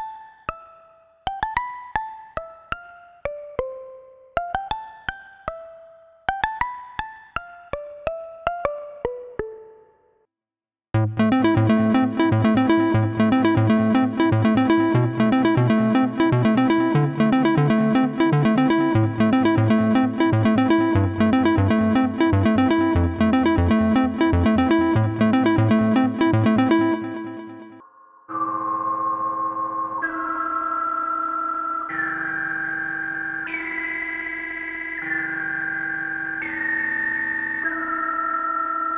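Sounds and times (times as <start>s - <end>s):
synth bass line: 11.0s - 27.8s
synthesizer sequenced pattern: 11.0s - 27.8s.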